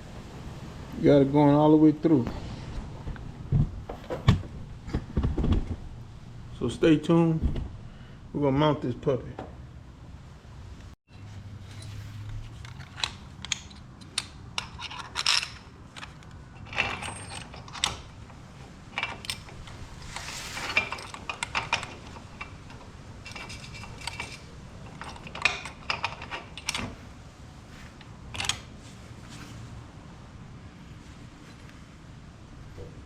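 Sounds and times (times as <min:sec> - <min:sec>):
metal hardware clicking and clinking: 0:11.6 - 0:27.0, 0:28.0 - 0:28.7.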